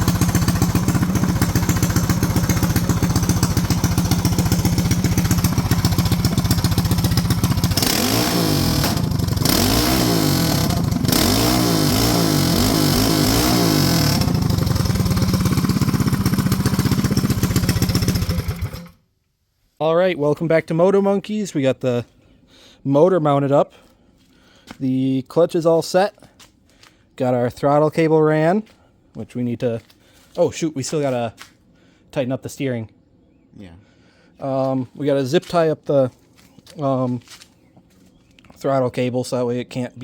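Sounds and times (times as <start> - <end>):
small go-kart engine running: 0.0 - 19.0.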